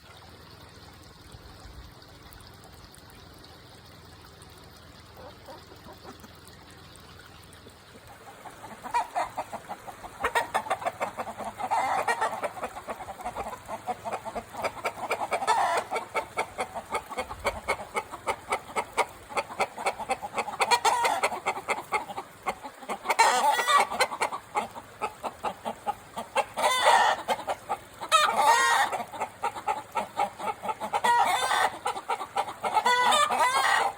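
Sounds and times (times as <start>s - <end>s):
chickens cackling: 5.2s - 6.4s, 8.0s - 33.9s
chickens clucking: 5.2s - 6.4s, 8.0s - 33.9s.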